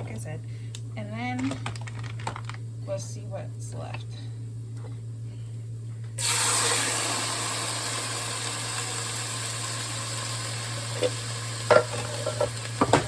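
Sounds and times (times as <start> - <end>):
chicken sizzling in a hot pan: 6.2 - 13.0.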